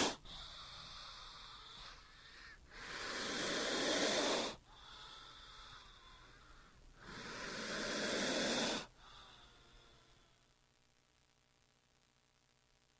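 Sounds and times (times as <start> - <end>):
snake hissing: 0.0 - 5.7, 7.0 - 9.5.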